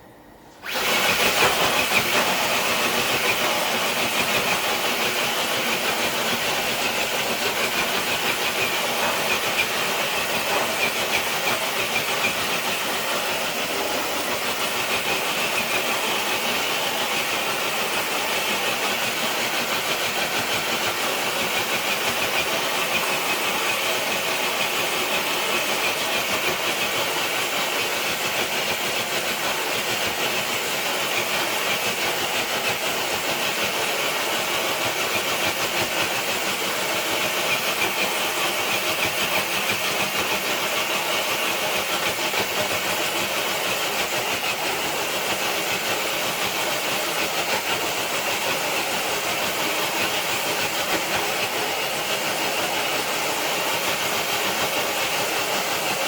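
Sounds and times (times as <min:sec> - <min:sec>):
electric motor whining: 0:00.6 - 0:26.8.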